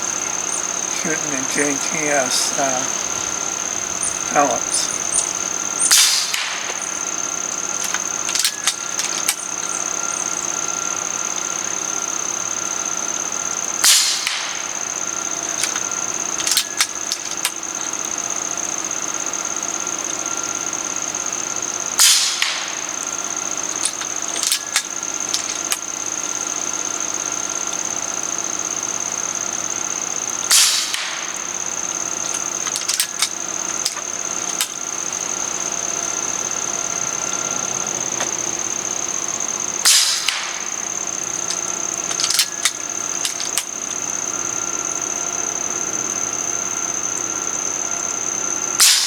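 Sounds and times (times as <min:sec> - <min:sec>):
steady high whine: 0:00.0 - 0:49.0
air rifle shots: 0:04.3 - 0:09.4, 0:13.8 - 0:17.6, 0:22.0 - 0:23.2, 0:30.5 - 0:34.8, 0:39.8 - 0:43.7, 0:48.8 - 0:49.0
rifle action clicking: 0:07.8 - 0:09.4, 0:15.6 - 0:17.6, 0:23.8 - 0:25.9, 0:32.2 - 0:34.8, 0:41.4 - 0:43.7.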